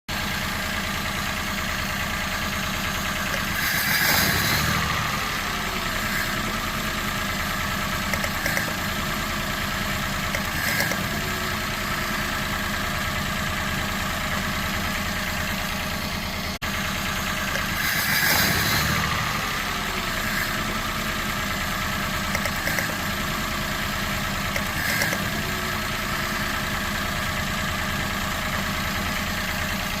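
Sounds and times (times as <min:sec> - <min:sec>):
car engine idling with misfire: 0:00.1 - 0:30.0.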